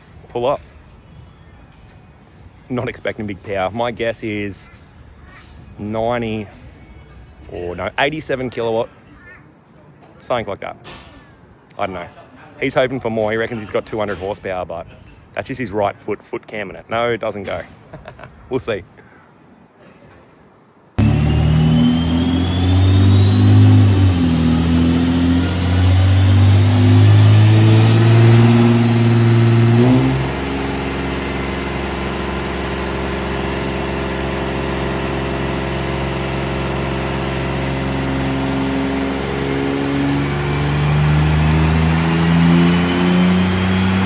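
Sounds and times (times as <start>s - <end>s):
car engine at full throttle: 21.0s - 44.0s
high whine: 21.0s - 44.0s.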